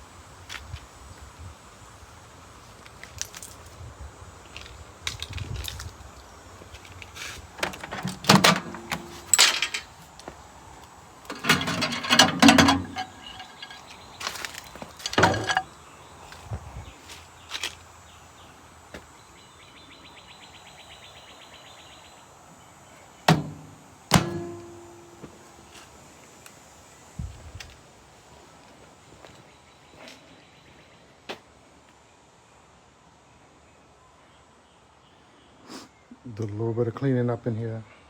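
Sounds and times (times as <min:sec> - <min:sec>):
scrap metal clanking: 0:07.6 - 0:10.0, 0:11.3 - 0:15.7, 0:23.3 - 0:25.7.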